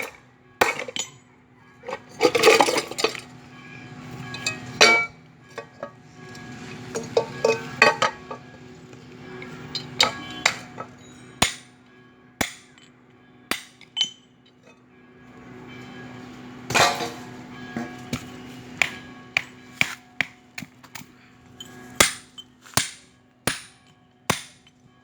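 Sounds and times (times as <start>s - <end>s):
hammer striking steel casing: 9.8s - 11.7s, 12.4s - 12.9s, 13.5s - 14.2s, 16.7s - 21.1s, 22.0s - 24.7s
metal clatter: 16.7s - 18.2s.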